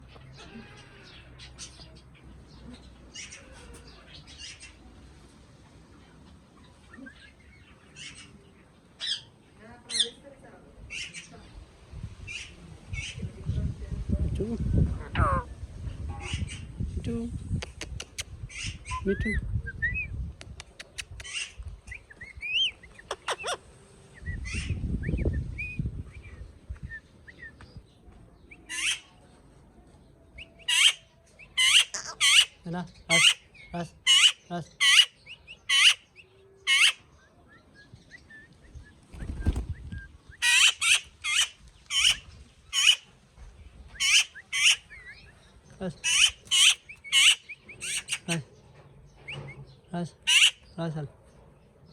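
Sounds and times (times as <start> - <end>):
parrot chirping and calling: 17.7 - 19.4, 20.6 - 23.7, 28.6 - 29.1, 30.6 - 37.2, 40.3 - 43.1, 43.9 - 48.6, 50.2 - 50.8.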